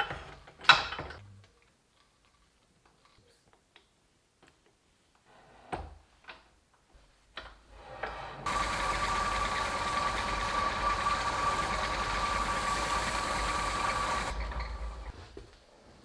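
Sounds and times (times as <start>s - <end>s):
motor winding down: 8.4s - 15.2s
electric motor whining: 8.5s - 15.1s.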